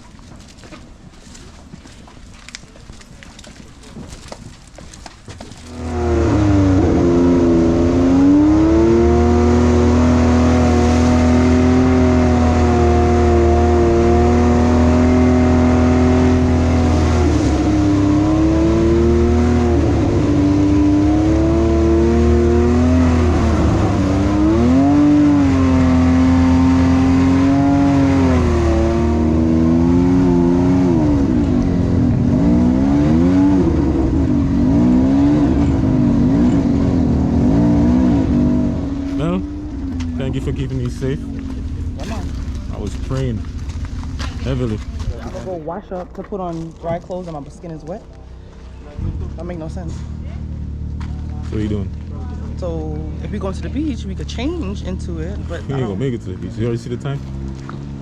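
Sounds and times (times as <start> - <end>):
atv engine revving: 5.7 - 58.0.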